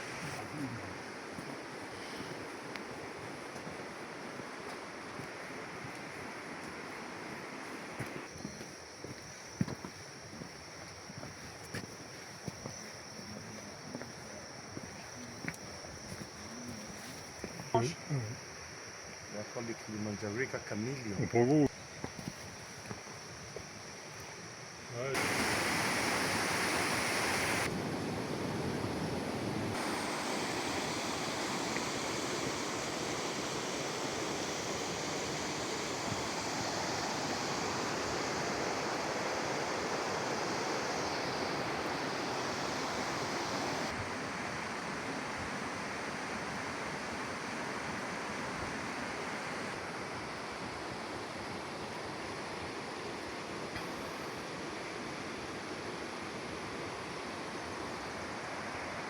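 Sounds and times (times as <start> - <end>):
waterfall roaring: 25.2 - 27.8, 29.7 - 44.3.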